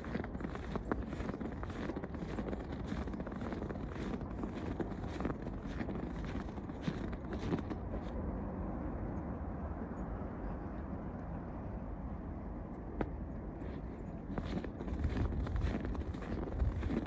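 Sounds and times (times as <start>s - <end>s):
footsteps crunching in snow: 0.0s - 8.2s, 13.6s - 17.0s.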